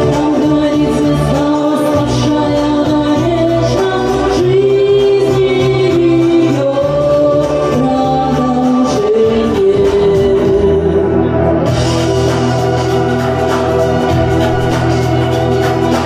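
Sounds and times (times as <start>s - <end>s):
person singing: 0.0s - 11.7s
karaoke backing track: 0.0s - 16.0s.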